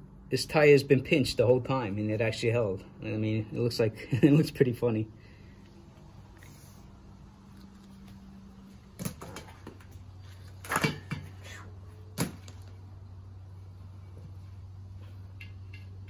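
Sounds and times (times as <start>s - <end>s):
steady low hum: 0.0s - 16.0s
objects knocking and clattering: 9.0s - 11.4s.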